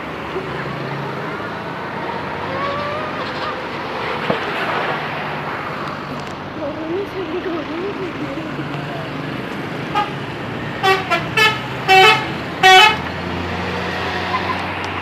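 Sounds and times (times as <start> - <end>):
bus engine humming: 0.0 - 15.0
bus horn tooting: 9.8 - 13.2.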